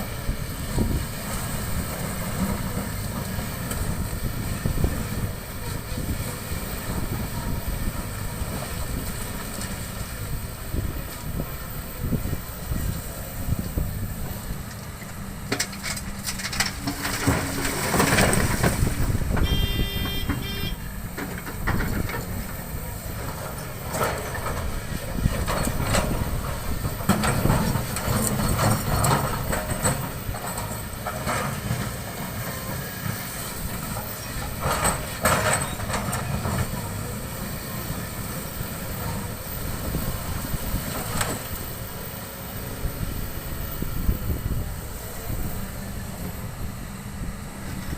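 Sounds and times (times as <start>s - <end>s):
excavator engine running: 0.0s - 47.9s
rocks and metal clattering: 15.4s - 19.5s
brief high tone: 19.4s - 20.9s.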